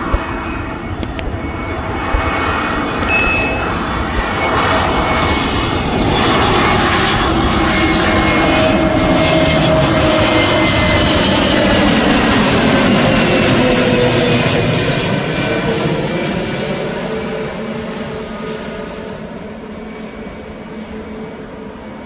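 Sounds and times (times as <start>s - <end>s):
jet airliner engines: 0.0s - 22.0s.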